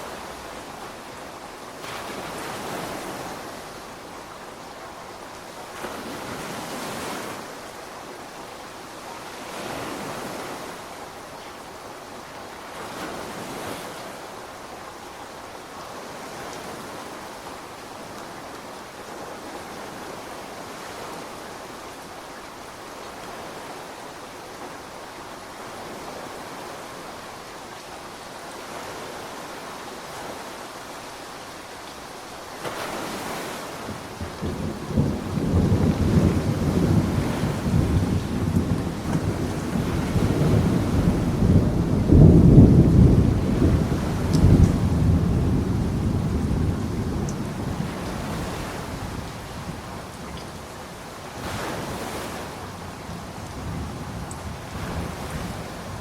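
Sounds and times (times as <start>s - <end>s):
ocean waves breaking: 0.0s - 4.3s, 32.5s - 45.6s, 50.7s - 53.0s
ocean surf: 0.0s - 56.0s
pouring rain: 0.0s - 56.0s.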